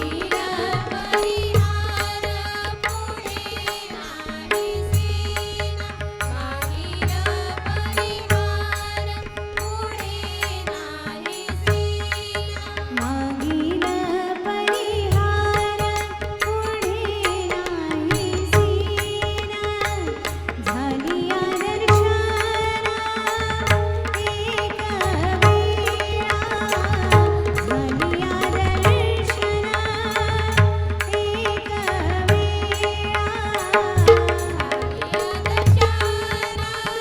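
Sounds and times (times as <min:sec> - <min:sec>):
tabla and pakhawaj drums: 0:00.0 - 0:37.0.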